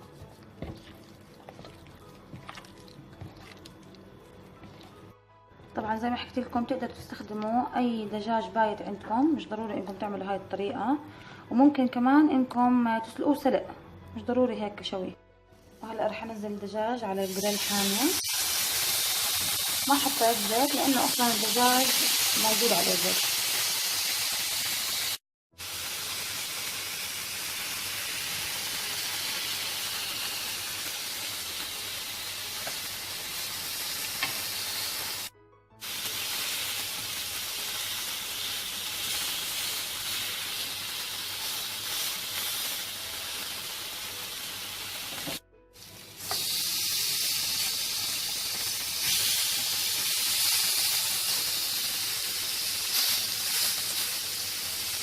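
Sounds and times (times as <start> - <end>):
chicken sizzling on grill pan: 17.2 - 55.0.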